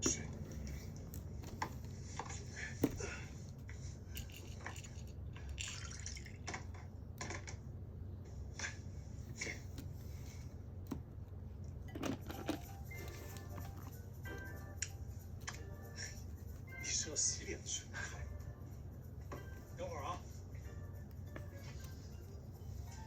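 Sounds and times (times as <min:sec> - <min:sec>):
steady low hum: 0:00.0 - 0:23.0
faint liquid sounds: 0:04.1 - 0:06.8.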